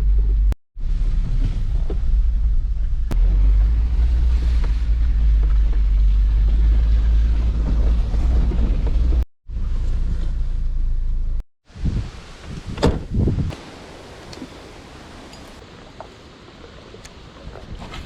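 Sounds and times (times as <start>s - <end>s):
wind buffeting microphone: 11.7s - 15.6s.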